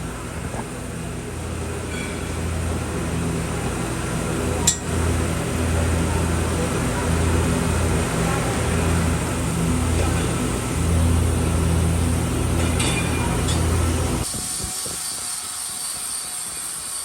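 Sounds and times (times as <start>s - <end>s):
low electrical hum: 0.0s - 14.3s.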